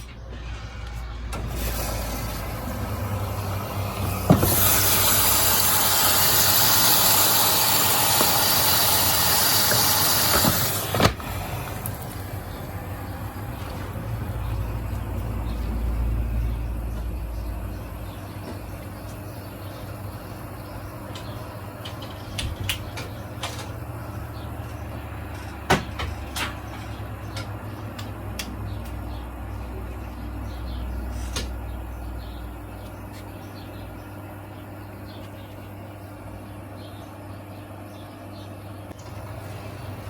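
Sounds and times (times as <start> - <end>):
washing machine hum: 0.0 - 40.0
sharp clicks and knocks: 21.1 - 23.9.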